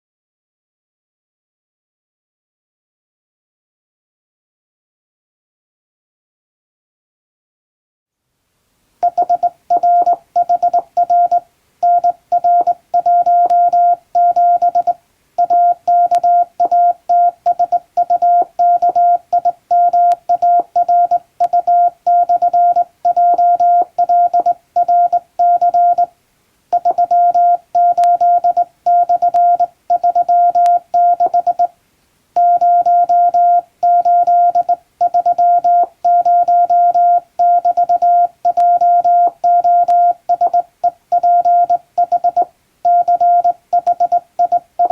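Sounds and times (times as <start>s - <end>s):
morse code tone: 9.0s - 26.1s, 26.7s - 31.7s, 32.4s - 44.9s.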